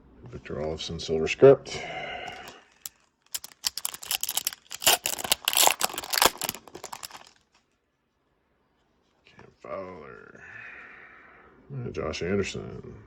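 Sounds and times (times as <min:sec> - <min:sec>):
cards and packaging crinkling: 0:02.3 - 0:02.6, 0:03.4 - 0:07.3.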